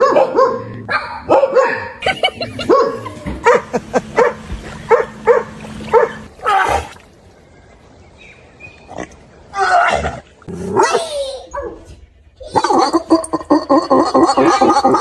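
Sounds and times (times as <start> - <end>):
dog barking: 0.0 - 6.3.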